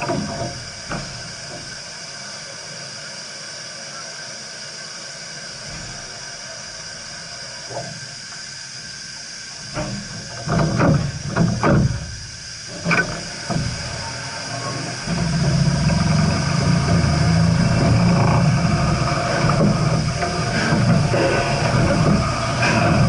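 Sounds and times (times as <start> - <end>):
steam locomotive exhaust bursts: 0.0 - 23.0
locomotive low rumble: 9.5 - 23.0.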